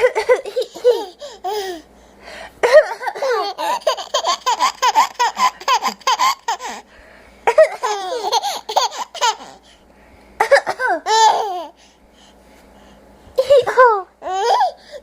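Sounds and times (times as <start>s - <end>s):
young child laughing: 0.0s - 1.8s, 2.6s - 6.9s, 7.5s - 9.6s, 13.4s - 14.8s.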